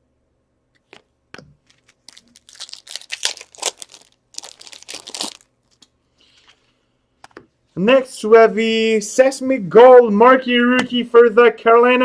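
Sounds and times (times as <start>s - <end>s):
wrapper tearing and crinkling: 1.6s - 5.9s.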